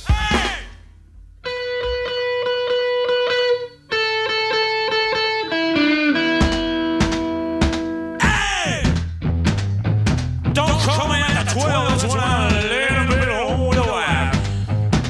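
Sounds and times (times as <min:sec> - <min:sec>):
electric guitar ringing notes: 0:01.4 - 0:08.2.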